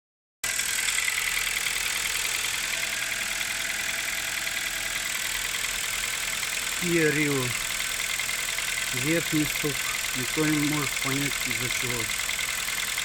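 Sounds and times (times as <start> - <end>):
car engine idling: 0.5 - 13.0
steady engine knocking: 0.5 - 13.0.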